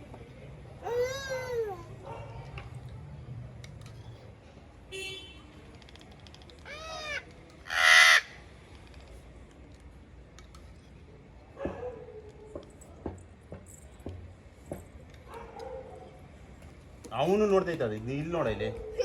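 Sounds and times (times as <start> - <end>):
harsh parrot screech: 6.7 - 8.3
parrot squawks: 6.7 - 8.3.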